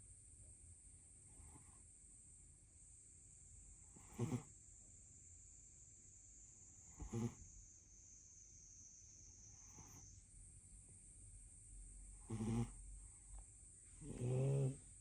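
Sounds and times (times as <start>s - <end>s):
faint high whine: 0.0s - 15.0s
pet snoring: 3.9s - 4.5s, 6.9s - 7.4s, 12.2s - 12.8s, 14.0s - 15.0s.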